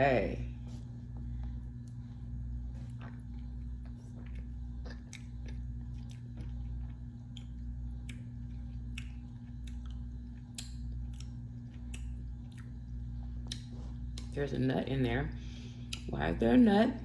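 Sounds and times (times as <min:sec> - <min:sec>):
low electrical hum: 0:00.0 - 0:17.0
wet mouth clicks and chewing: 0:02.8 - 0:14.4, 0:15.9 - 0:16.1.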